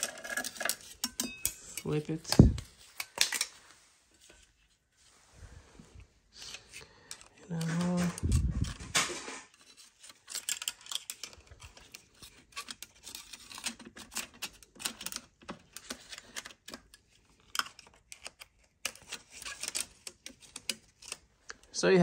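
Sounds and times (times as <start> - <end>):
metal parts clicking and clinking: 0.0 - 3.5, 7.1 - 21.2.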